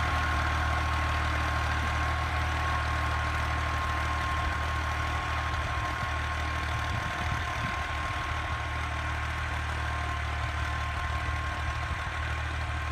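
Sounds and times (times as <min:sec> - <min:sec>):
tractor diesel engine running: 0:00.0 - 0:12.9.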